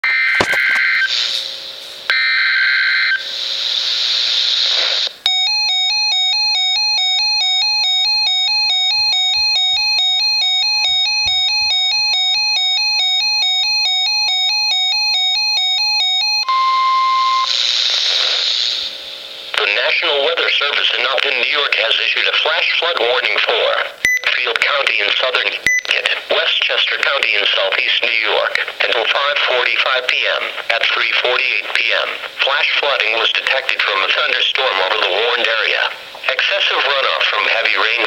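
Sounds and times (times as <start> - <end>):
two-tone electronic alarm: 0.0 - 1.3, 2.1 - 3.3, 5.2 - 17.6
radio static: 0.0 - 2.3, 3.0 - 5.2, 17.4 - 38.0
steady warning tone: 5.2 - 17.6.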